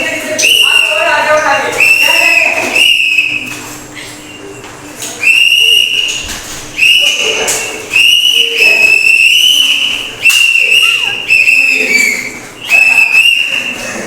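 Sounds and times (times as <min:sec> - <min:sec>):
whistle blasts: 0:00.4 - 0:01.1, 0:01.8 - 0:03.5, 0:05.2 - 0:06.2, 0:06.8 - 0:13.8.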